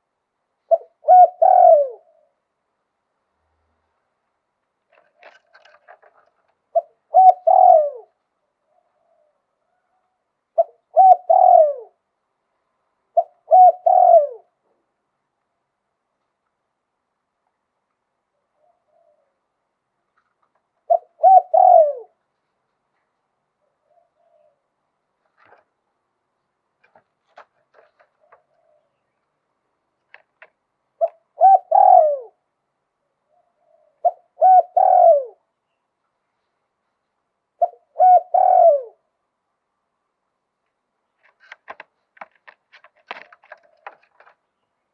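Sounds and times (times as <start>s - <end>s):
dove cooing: 0.6s - 2.4s, 4.9s - 12.0s, 13.1s - 14.6s, 18.6s - 19.4s, 20.8s - 22.2s, 23.6s - 24.7s, 27.7s - 29.0s, 31.0s - 32.4s, 33.3s - 35.5s, 37.6s - 39.1s, 41.7s - 44.4s.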